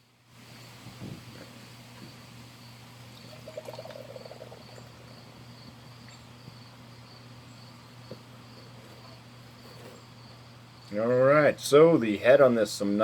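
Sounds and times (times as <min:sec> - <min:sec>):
crickets chirping: 0:00.0 - 0:13.0
liquid gurgle: 0:03.1 - 0:05.2
beer poured into a glass: 0:03.1 - 0:05.3.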